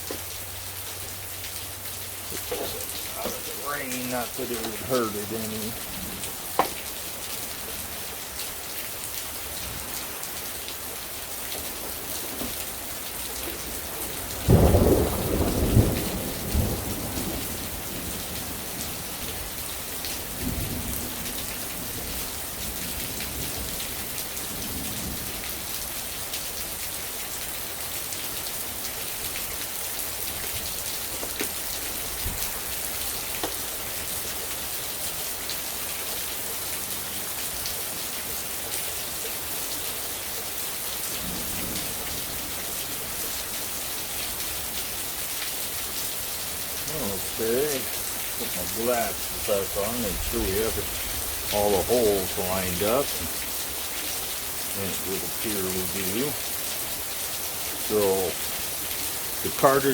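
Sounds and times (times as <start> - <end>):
steady rain falling: 0.0 - 59.9
thunder rumbling: 2.3 - 6.4, 13.4 - 19.6, 46.8 - 53.4.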